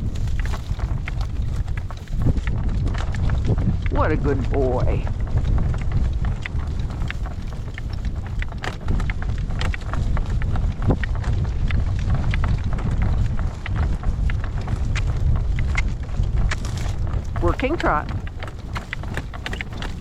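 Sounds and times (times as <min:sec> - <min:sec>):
horse trotting: 0:00.0 - 0:20.0
wind buffeting microphone: 0:00.0 - 0:20.0.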